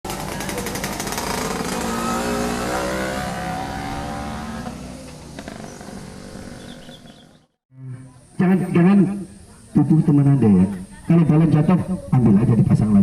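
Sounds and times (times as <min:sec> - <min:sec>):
vehicle engine accelerating: 0:00.1 - 0:07.6.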